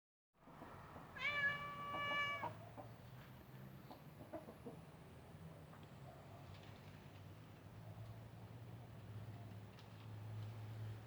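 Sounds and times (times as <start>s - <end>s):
cat meowing: 1.2s - 2.6s
faint ticks and scrapes: 5.7s - 8.2s, 9.2s - 11.0s.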